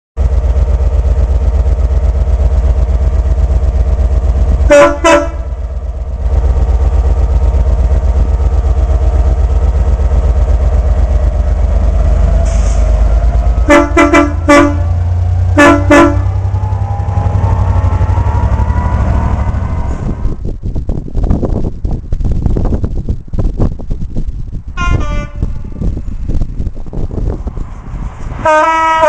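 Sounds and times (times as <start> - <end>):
low rumble of train running: 0.2 - 29.0
train horn blasts: 4.7 - 5.6, 13.6 - 20.2, 24.8 - 25.8, 28.4 - 29.0.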